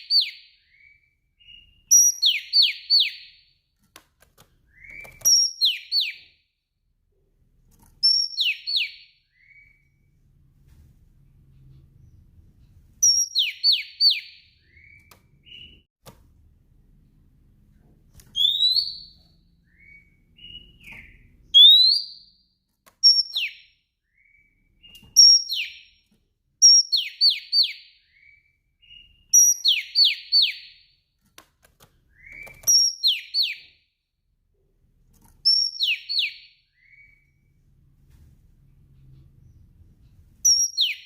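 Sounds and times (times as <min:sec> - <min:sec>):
bird whistling calls: 0:18.4 - 0:22.2, 0:40.5 - 0:41.0.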